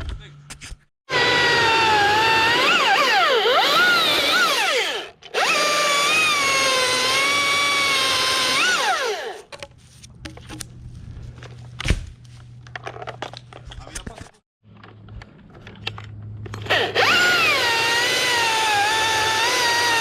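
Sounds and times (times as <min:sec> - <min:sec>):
chainsaw cutting wood: 0:01.1 - 0:09.5, 0:16.6 - 0:20.0.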